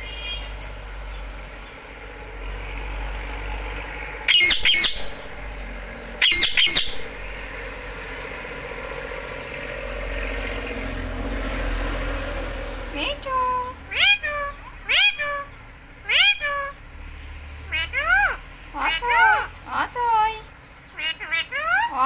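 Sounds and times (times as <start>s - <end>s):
parrot squawking: 4.3s - 5.4s, 6.2s - 7.2s, 13.2s - 22.0s.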